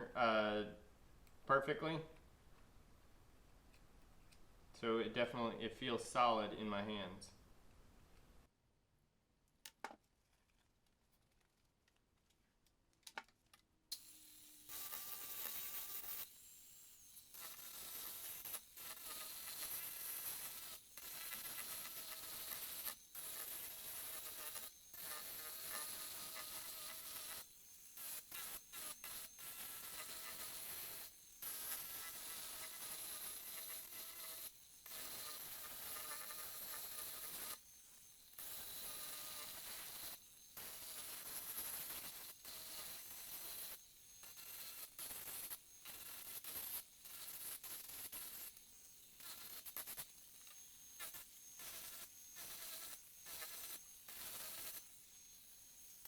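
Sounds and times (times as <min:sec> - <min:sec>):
angle grinder whining against wood: 0:13.9 - 0:56.0.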